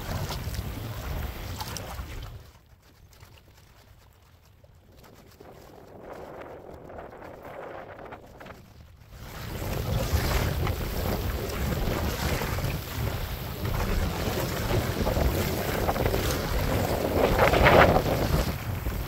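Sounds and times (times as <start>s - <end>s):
water sloshing around kayak: 0.0s - 19.0s
wind buffeting microphone: 4.8s - 19.0s.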